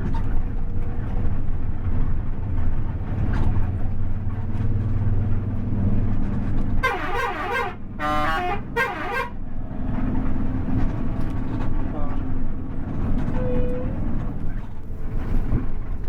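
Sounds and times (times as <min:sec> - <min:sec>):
bus engine low drone: 0:00.0 - 0:16.0
multi-tone musical air horn: 0:06.8 - 0:09.4.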